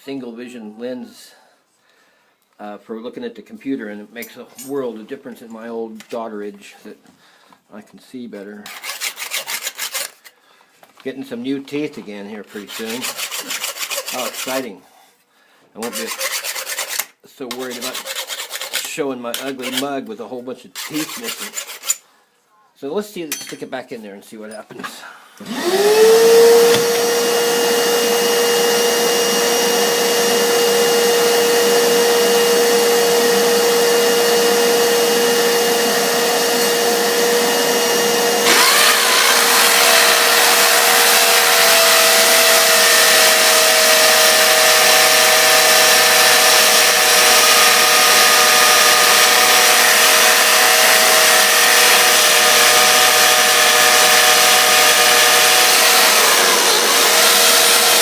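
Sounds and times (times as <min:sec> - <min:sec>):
electric drill whine: 0:25.4 - 0:58.0.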